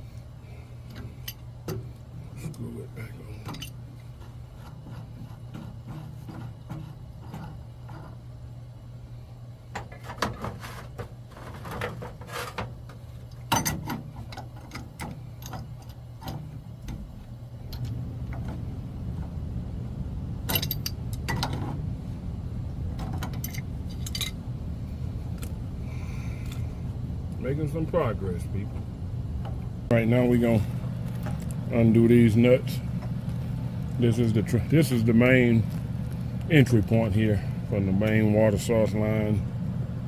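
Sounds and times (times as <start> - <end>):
steady low hum: 0.0 - 40.0
tools clinking on pipe fittings: 3.4 - 3.8, 13.5 - 16.4, 20.5 - 21.6, 23.0 - 24.4.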